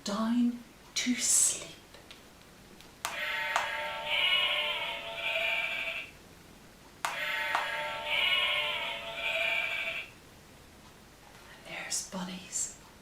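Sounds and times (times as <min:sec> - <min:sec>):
recorded sheep bleating from small speaker: 0:07.2 - 0:10.1.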